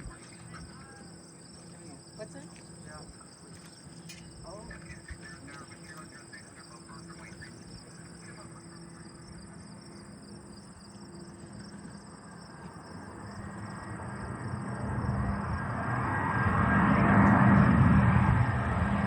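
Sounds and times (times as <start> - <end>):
insects chirring: 0.0 - 19.0
jet rumble: 0.0 - 19.0.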